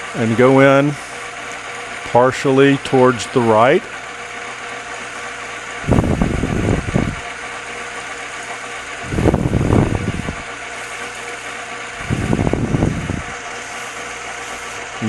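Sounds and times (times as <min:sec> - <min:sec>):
lathe motor hum: 0:00.0 - 0:15.0
lathe tool cutting bursts: 0:00.0 - 0:15.0.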